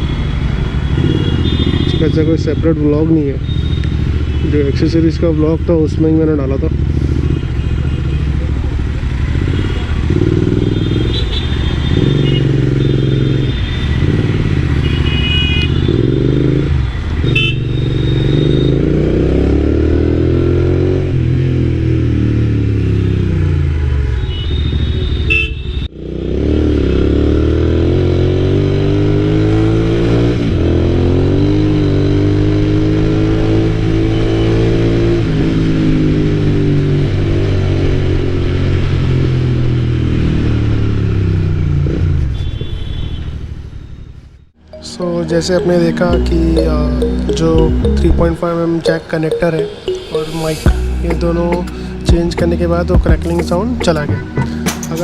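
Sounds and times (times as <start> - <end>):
vehicle horn toots: 0.8 - 2.2, 10.7 - 16.1, 17.2 - 18.9, 24.2 - 25.9
motorcycle engine accelerating: 11.8 - 15.1, 15.8 - 22.8.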